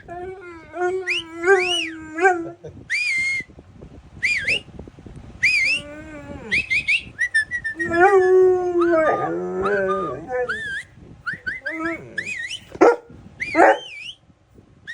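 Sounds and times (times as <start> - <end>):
dog howling: 0.0 - 2.8, 7.8 - 10.8, 11.5 - 14.0
dog whining: 0.0 - 3.2, 5.5 - 14.0.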